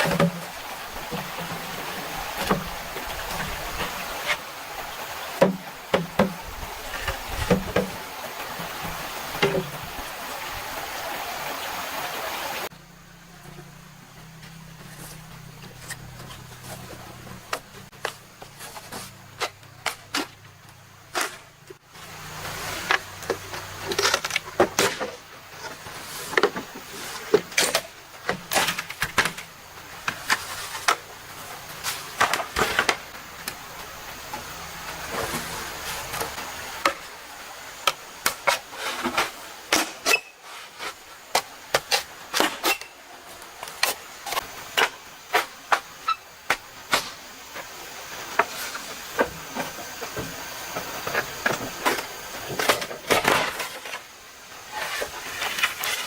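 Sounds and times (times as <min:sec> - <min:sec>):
faint steady hiss: 0:00.0 - 0:56.0
low hum: 0:12.7 - 0:18.9
bamboo knocks and cracks: 0:22.9 - 0:25.2, 0:46.5 - 0:47.2.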